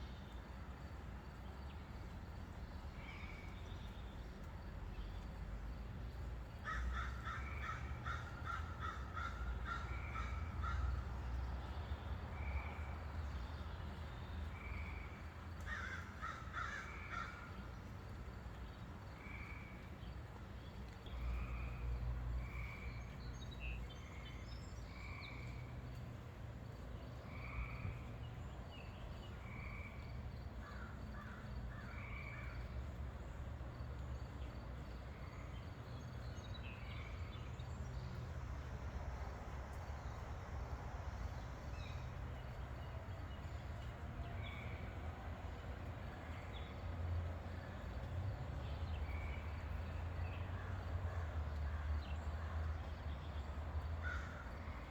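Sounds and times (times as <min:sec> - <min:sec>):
crows cawing: 0:06.6 - 0:11.0, 0:15.7 - 0:17.6, 0:30.6 - 0:32.2, 0:54.0 - 0:54.6.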